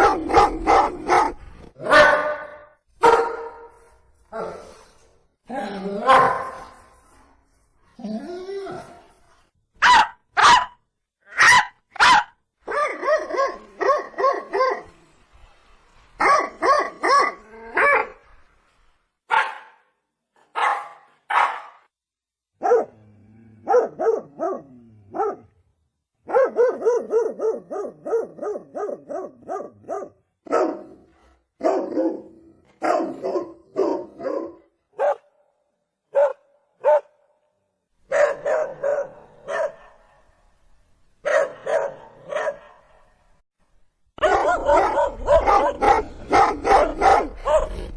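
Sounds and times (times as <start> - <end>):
dogs barking: 0.0 - 3.7, 9.8 - 10.8, 19.3 - 19.8, 20.6 - 21.8, 22.6 - 22.9, 23.6 - 25.4, 26.3 - 31.0, 38.1 - 40.1, 41.3 - 43.0, 44.2 - 47.8.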